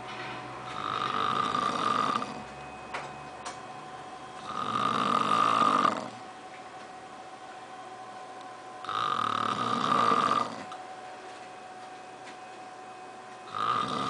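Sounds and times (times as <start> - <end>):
man snoring: 0.7 - 2.4, 4.4 - 6.2, 8.8 - 10.8, 13.5 - 14.0.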